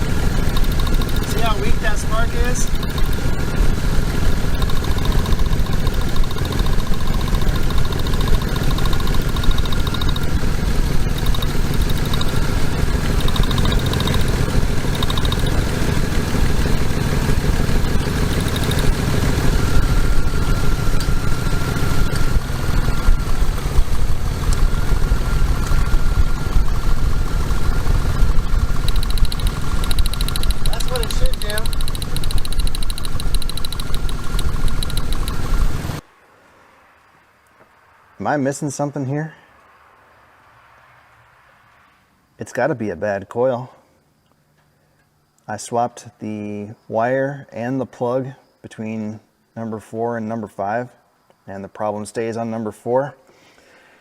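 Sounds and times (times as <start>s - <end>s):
engine idling unevenly: 0.0s - 36.0s.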